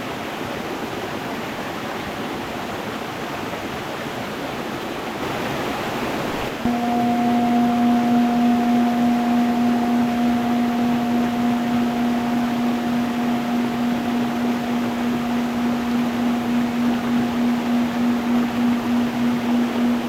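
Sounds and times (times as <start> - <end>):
singing bowl ringing: 6.7 - 20.0.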